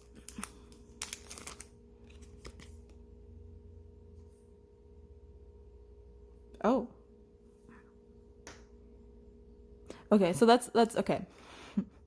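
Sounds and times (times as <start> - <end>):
photo cards clicking and rustling: 0.0 - 3.0
faint steady hum: 0.0 - 12.0.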